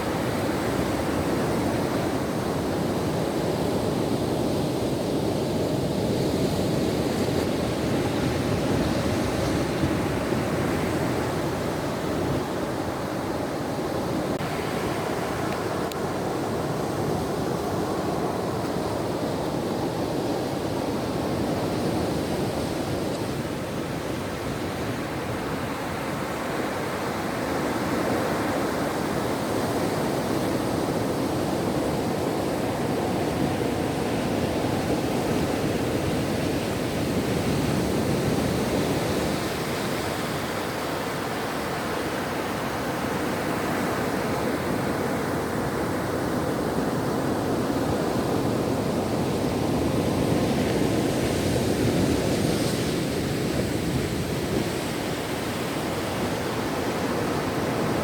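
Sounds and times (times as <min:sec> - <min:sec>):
ocean waves on shore: 0:00.0 - 0:58.0.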